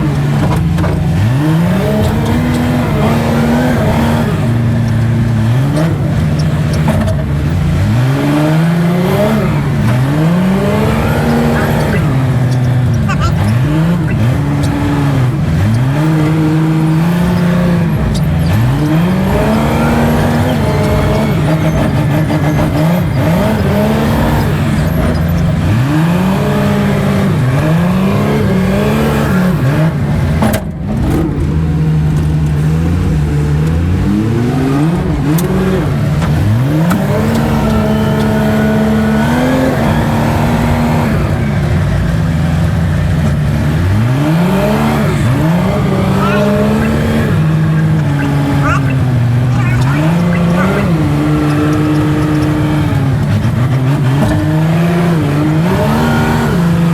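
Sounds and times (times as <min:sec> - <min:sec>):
vehicle engine revving: 0:00.0 - 0:56.9.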